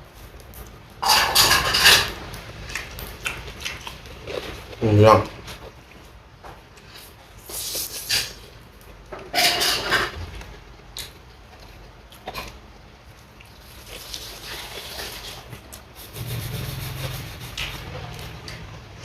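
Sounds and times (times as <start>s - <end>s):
rubbing and handling noises: 13.7s - 18.4s
low hum: 16.1s - 19.0s.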